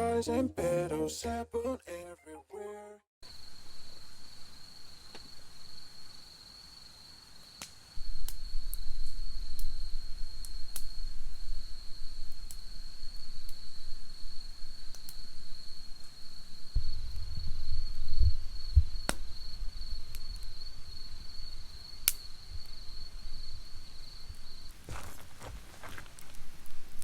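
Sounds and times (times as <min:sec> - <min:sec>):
campfire crackling: 0:03.2 - 0:27.0
high-pitched insect trill: 0:08.0 - 0:26.0.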